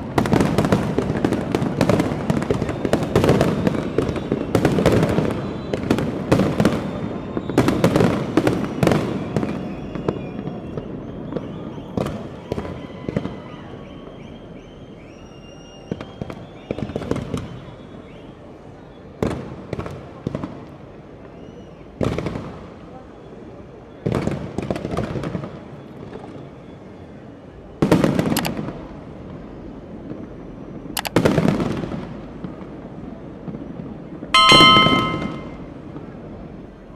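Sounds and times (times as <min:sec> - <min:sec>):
fireworks bangs and booms: 0:00.0 - 0:13.4, 0:24.0 - 0:25.6.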